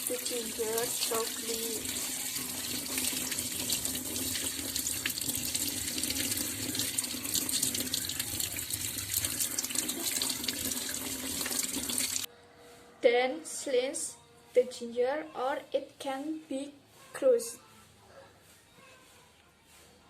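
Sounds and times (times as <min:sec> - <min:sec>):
tap water running into sink: 0:00.0 - 0:12.3.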